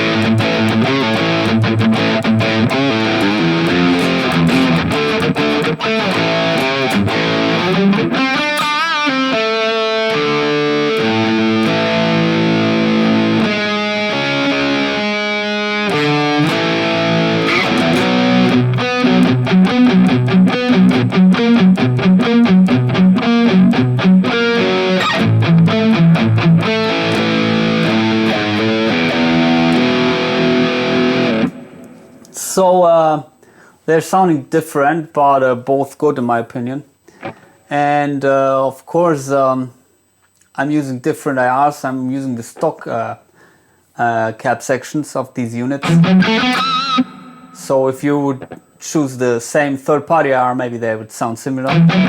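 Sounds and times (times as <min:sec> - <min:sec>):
distorted electric guitar: 0:00.0 - 0:32.4, 0:45.8 - 0:48.8, 0:51.6 - 0:52.0.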